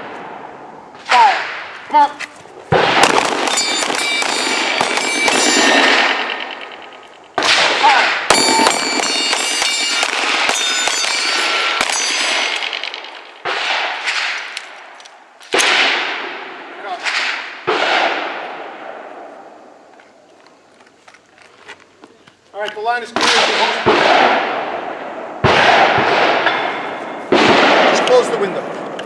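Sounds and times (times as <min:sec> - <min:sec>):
handgun shots: 0:02.1 - 0:07.6, 0:08.3 - 0:13.2
steel plates ringing: 0:03.0 - 0:07.2, 0:08.3 - 0:13.4.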